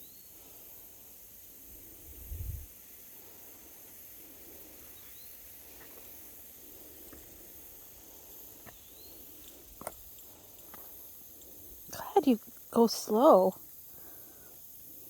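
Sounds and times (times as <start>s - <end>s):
small bird chirping: 8.5s - 9.8s.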